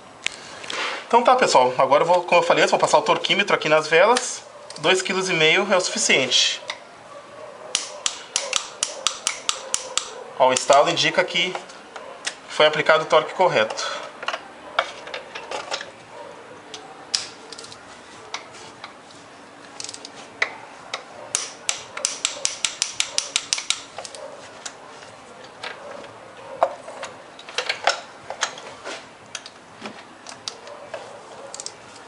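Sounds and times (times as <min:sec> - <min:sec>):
ratchet wrench clicking: 0:07.7 - 0:10.7, 0:19.8 - 0:20.1, 0:21.3 - 0:24.2, 0:31.5 - 0:31.7
metal clicks and knocks: 0:07.7 - 0:10.8, 0:19.7 - 0:24.8, 0:25.4 - 0:28.7.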